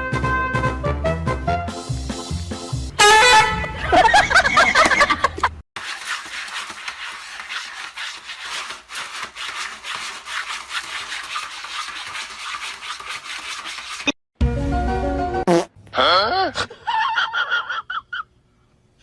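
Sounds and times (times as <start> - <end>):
rapid scratching: 3.0 - 14.1.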